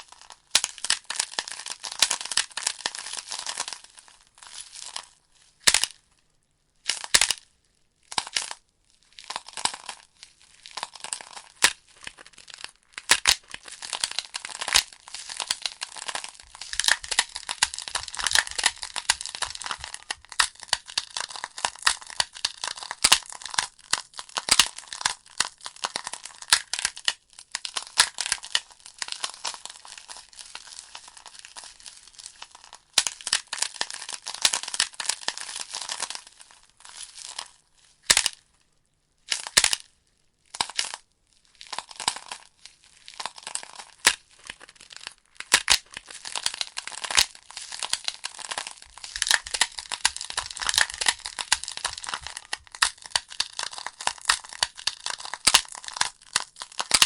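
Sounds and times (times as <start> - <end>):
wood fire crackling: 16.4 - 21.1, 48.9 - 54.6.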